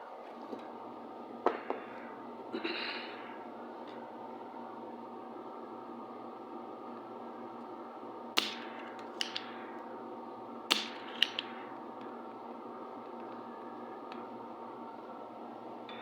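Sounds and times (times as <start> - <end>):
steady background hum: 0.0 - 16.0
sharp metallic snaps: 10.7 - 11.5.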